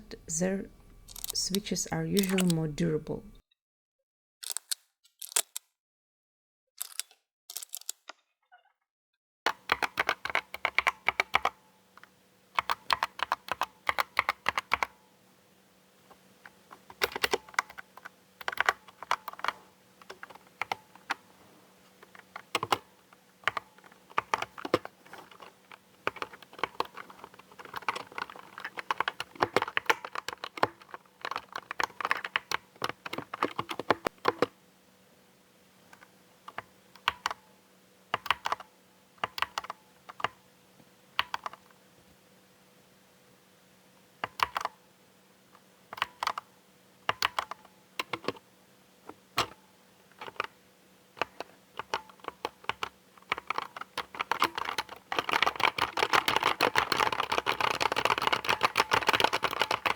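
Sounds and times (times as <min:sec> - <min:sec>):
mechanical keyboard typing: 0:00.0 - 0:03.4, 0:09.5 - 0:15.0, 0:16.7 - 0:21.3, 0:22.0 - 0:34.6, 0:35.9 - 0:37.4, 0:38.1 - 0:40.4, 0:41.2 - 0:41.7, 0:44.2 - 0:44.8, 0:45.9 - 0:48.4, 0:49.4 - 0:50.6, 0:51.2 - 0:59.9.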